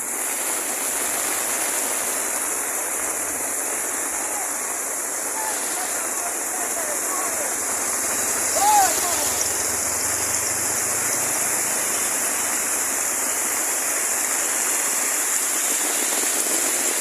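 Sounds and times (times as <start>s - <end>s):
running water rushing: 0.0s - 17.0s.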